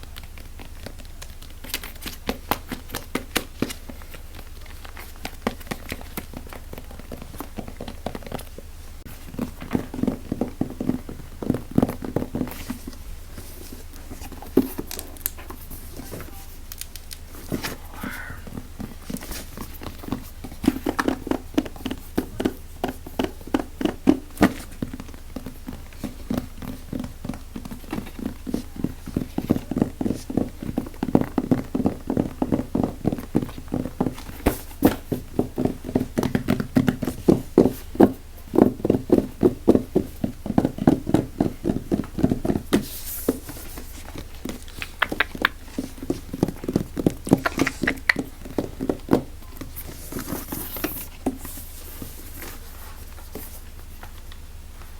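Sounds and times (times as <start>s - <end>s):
fast sharp tapping on object: 17.0s - 51.5s.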